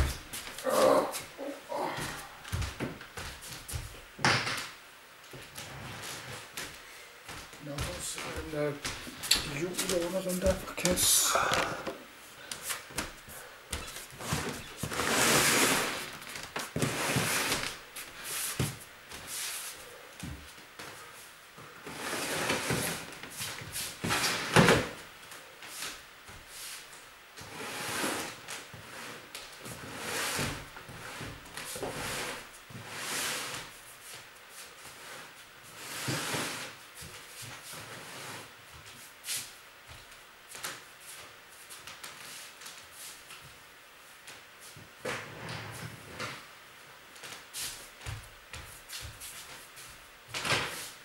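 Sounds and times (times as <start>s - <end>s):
boxes scraping and rustling: 5.4s - 6.6s, 13.8s - 19.8s, 20.8s - 25.0s, 27.4s - 39.5s.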